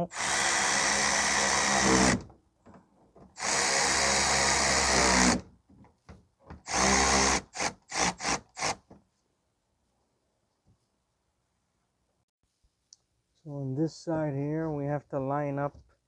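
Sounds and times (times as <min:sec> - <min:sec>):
power drill driving screws: 0:00.1 - 0:02.3, 0:03.4 - 0:05.4, 0:06.6 - 0:08.9.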